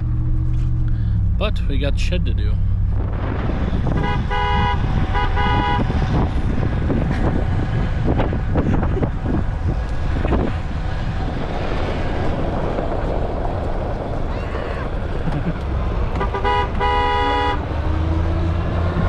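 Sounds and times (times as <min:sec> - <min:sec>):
vehicle engine running: 0:00.0 - 0:19.0
wind noise on microphone: 0:02.7 - 0:19.0
horn toot: 0:03.8 - 0:06.0, 0:16.1 - 0:18.8.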